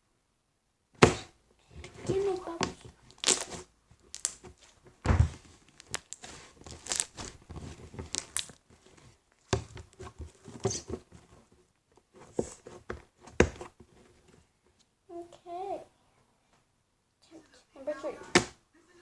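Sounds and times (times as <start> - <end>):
slime squelching: 1.9 - 10.9
low thuds: 5.0 - 5.4.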